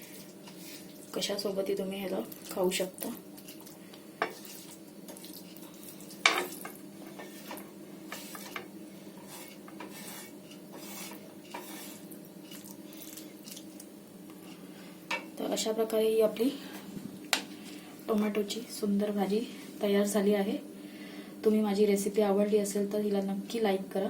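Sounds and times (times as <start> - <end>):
spoon scraping a griddle: 3.4 - 13.6.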